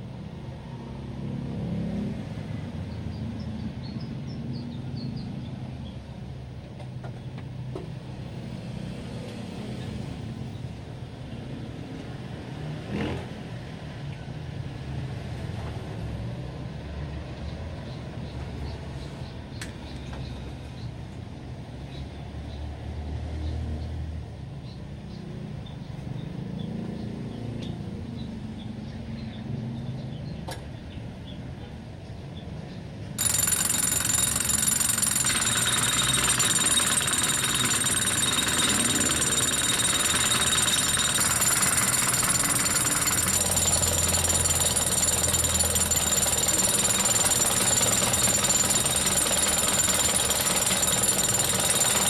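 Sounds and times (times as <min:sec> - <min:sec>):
sharp engine knock: 0:33.2 - 0:52.0.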